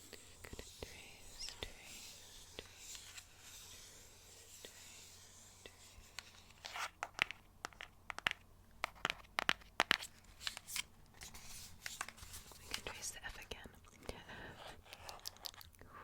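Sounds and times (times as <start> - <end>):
faint hiss: 0.0 - 6.6.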